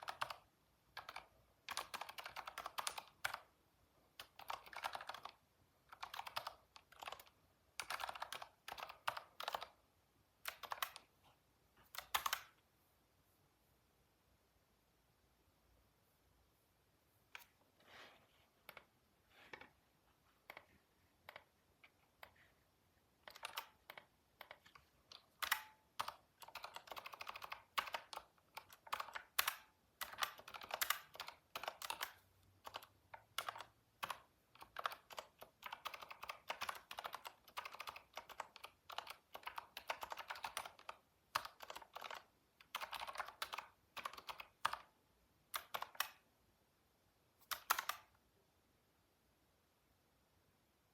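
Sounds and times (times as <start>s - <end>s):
computer keyboard typing: 0.0s - 3.5s, 4.1s - 9.8s, 10.4s - 11.1s, 11.8s - 12.6s, 23.2s - 46.2s, 47.4s - 48.1s.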